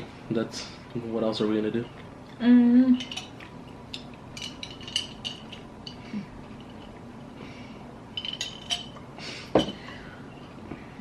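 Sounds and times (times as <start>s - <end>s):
light clicks and clinks of eating: 8.2s - 10.5s.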